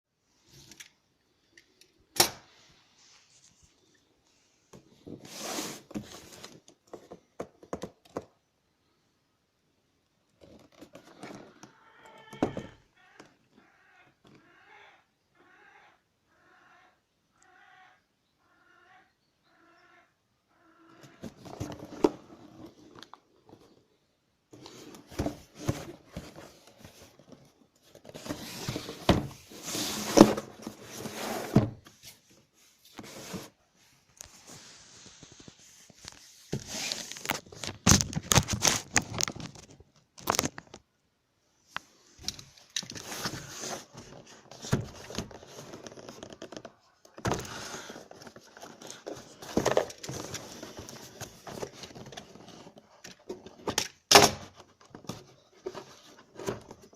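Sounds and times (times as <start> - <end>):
packaging crinkling and rustling: 34.2 - 40.8.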